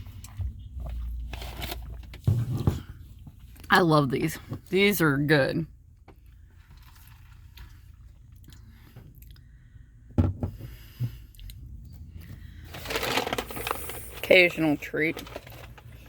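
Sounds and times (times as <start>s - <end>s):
person chewing crispy food: 6.3s - 9.5s.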